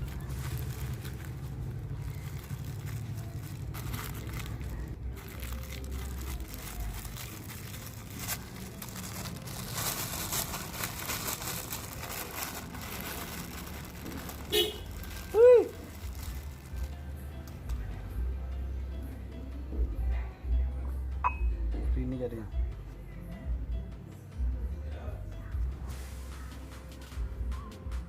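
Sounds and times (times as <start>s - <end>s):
crumbs crinkling and squishing: 0.0s - 17.0s.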